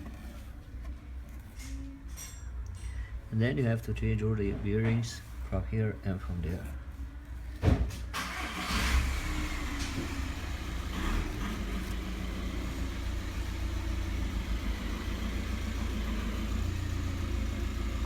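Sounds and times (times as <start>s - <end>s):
thump: 7.6s - 8.0s
car engine running: 8.7s - 18.0s.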